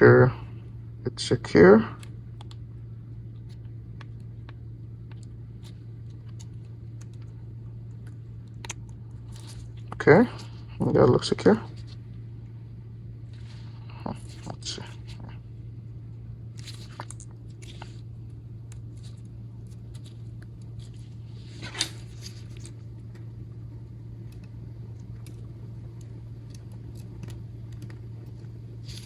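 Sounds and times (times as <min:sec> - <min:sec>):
steady low hum: 0:00.0 - 0:29.0
phone parts clicking and rustling: 0:03.3 - 0:11.0, 0:16.5 - 0:23.3, 0:24.2 - 0:29.0.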